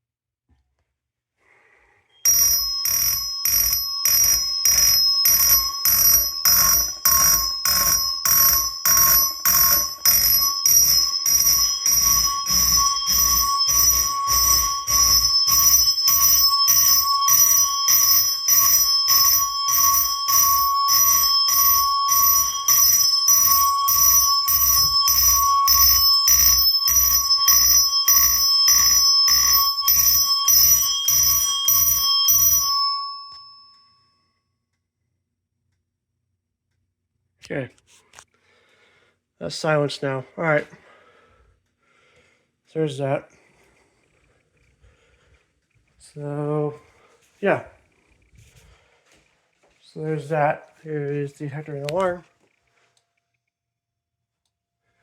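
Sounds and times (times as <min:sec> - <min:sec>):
high alarm ringing tones: 0:02.2 - 0:34.5
alarm rapid repeated strikes: 0:02.3 - 0:32.6.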